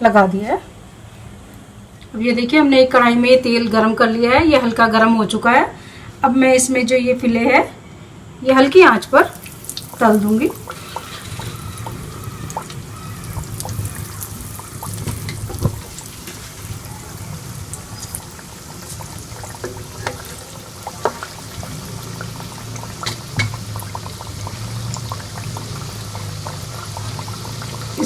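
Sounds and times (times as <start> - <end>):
chicken frying in oil: 8.9 - 28.0
oil popping and crackling: 9.0 - 28.0.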